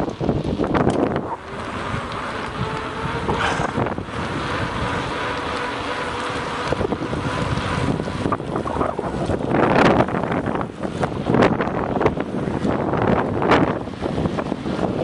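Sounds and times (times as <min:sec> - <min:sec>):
vehicle engine running: 0:00.0 - 0:15.0
wind rushing over microphone: 0:00.0 - 0:15.0.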